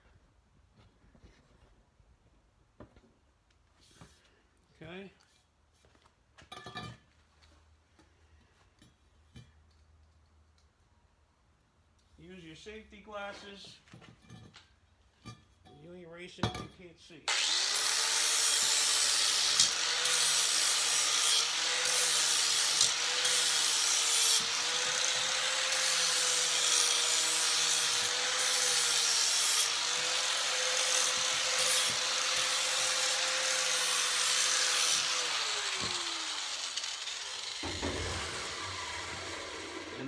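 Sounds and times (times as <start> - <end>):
electric grinder grinding metal: 17.3 - 40.0
grinder winding down: 17.3 - 40.0.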